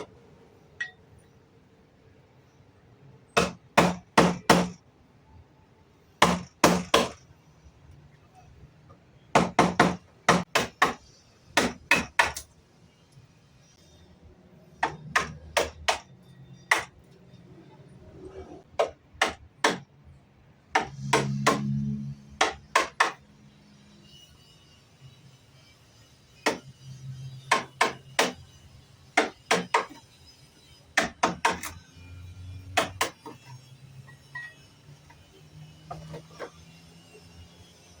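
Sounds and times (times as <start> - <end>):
hammering on wood: 3.4 - 4.8, 6.2 - 7.2, 9.3 - 11.0, 11.6 - 12.5, 14.8 - 16.1, 16.7 - 17.0, 18.8 - 19.9, 20.7 - 21.7, 22.4 - 23.2, 26.4 - 26.7, 27.5 - 28.4, 29.2 - 30.0, 31.0 - 31.8, 32.8 - 33.4.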